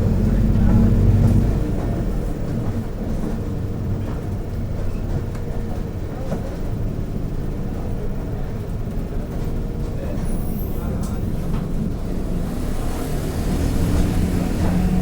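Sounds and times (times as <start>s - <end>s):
bus drivetrain and road rumble: 0.0s - 15.0s
loud low engine note: 10.5s - 15.0s.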